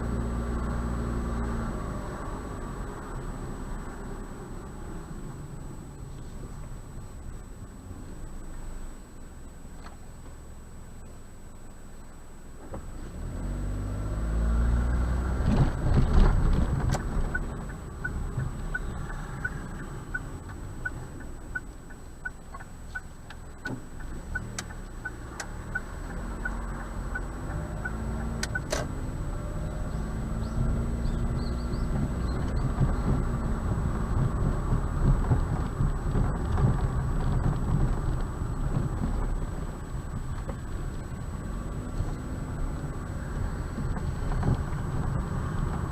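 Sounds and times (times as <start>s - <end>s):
car engine accelerating: 0.0s - 45.9s
faint regular ticking: 16.9s - 28.8s.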